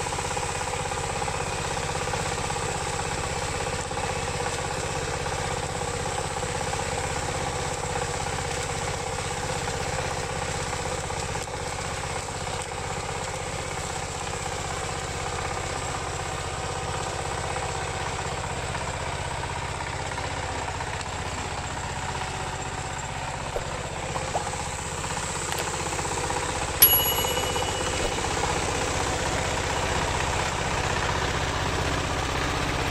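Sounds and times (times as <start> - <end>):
diesel engine running: 0.0 - 32.9
sharp metallic clank: 26.8 - 28.9.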